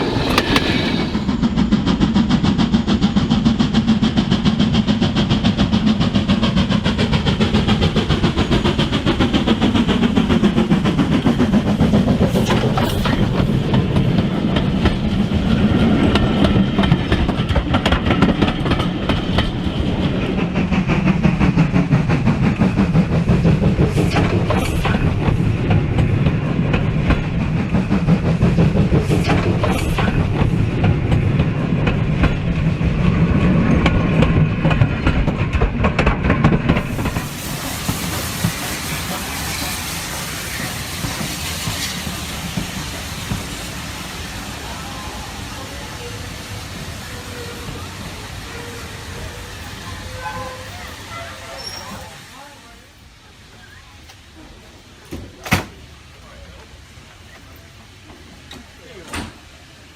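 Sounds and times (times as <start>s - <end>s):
clicking over rail joints: 0.0s - 1.4s
model train wheels rumbling: 0.0s - 59.9s.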